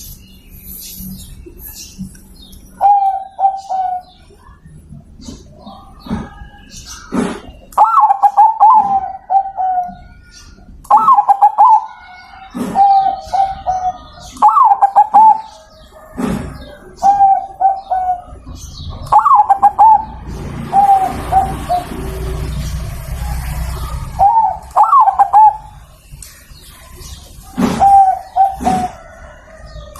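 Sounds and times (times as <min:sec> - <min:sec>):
dove cooing: 0:02.8 - 0:04.2, 0:07.1 - 0:10.2, 0:10.9 - 0:22.4, 0:23.2 - 0:25.9, 0:27.4 - 0:29.4
steady rushing noise: 0:18.3 - 0:28.9.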